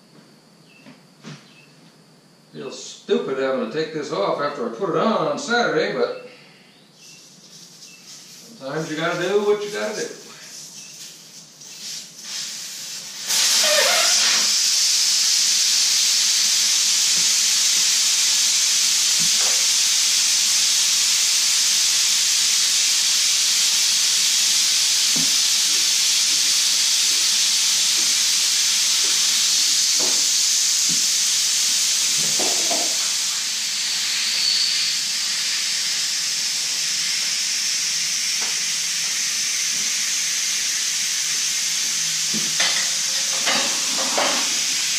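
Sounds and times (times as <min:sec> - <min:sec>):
air hissing from tire valve: 0:07.0 - 0:44.9.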